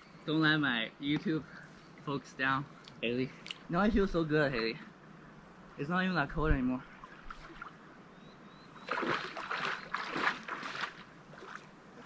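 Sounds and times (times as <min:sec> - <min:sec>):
lake water splashing: 0:06.8 - 0:07.8, 0:08.7 - 0:12.0.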